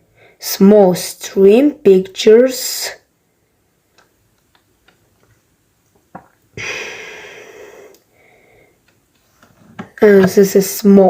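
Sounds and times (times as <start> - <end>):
person breathing at microphone: 6.6 - 8.8.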